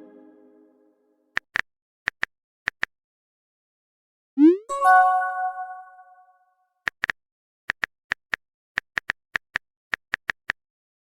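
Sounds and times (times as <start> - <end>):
chime tones: 4.4 - 6.2.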